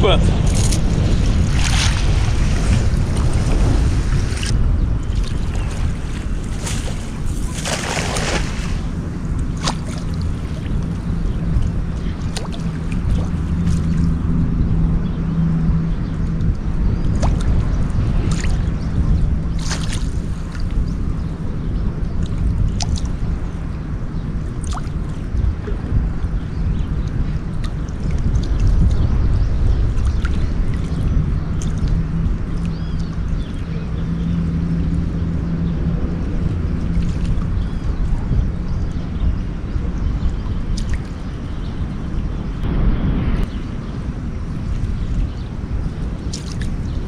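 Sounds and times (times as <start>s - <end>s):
water splashes: 0.0s - 14.2s, 17.1s - 20.9s, 29.8s - 38.9s, 40.2s - 42.2s, 44.5s - 47.0s
wind rumbling on microphone: 0.0s - 47.0s.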